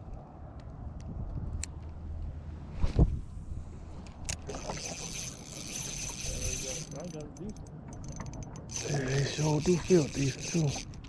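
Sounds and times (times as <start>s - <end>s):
wind rumbling on microphone: 0.0s - 5.0s.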